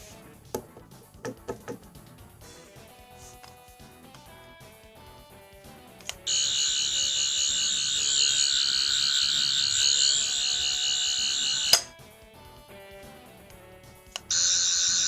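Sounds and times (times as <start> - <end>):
high-pitched warbling buzz: 6.3 - 11.8.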